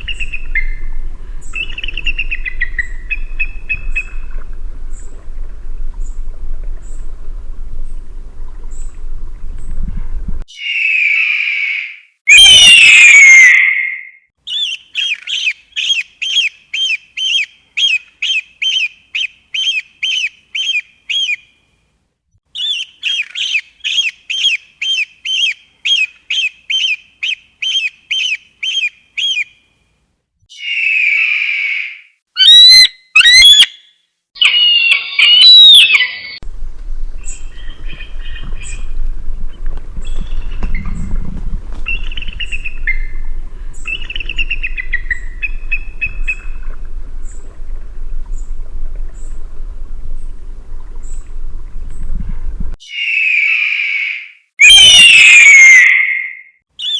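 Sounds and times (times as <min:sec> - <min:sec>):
eagle screaming: 0:10.5 - 0:14.2, 0:30.5 - 0:33.8, 0:34.4 - 0:36.4, 0:52.8 - 0:56.9
high piping chirps: 0:10.5 - 0:21.4, 0:30.5 - 0:36.4, 0:52.8 - 0:56.9.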